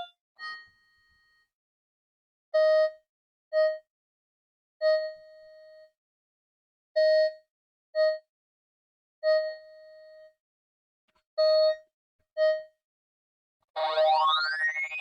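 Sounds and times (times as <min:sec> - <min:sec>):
synthesized beeps: 0:13.8 - 0:15.0.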